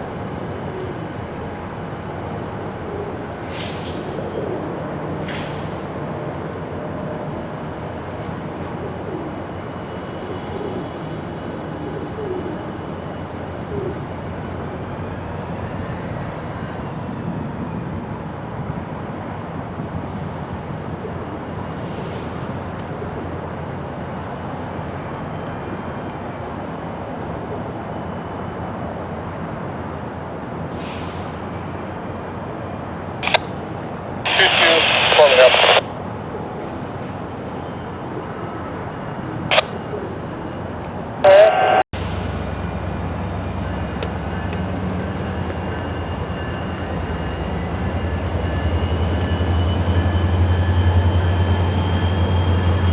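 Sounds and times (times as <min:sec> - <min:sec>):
diesel locomotives rumbling: 0:00.0 - 0:52.9.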